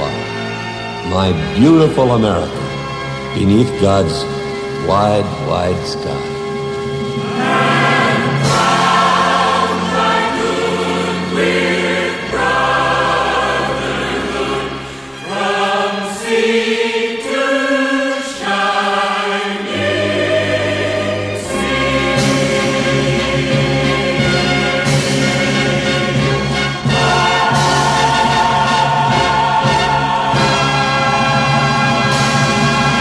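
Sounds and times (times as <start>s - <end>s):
choir singing with accompaniment: 6.4s - 33.0s.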